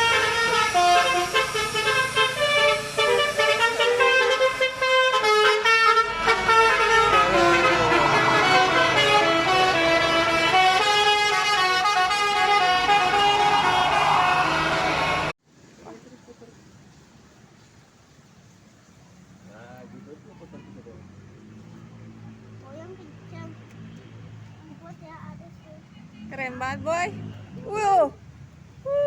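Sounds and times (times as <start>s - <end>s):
musical bus horn playing a tune: 0.0s - 15.3s.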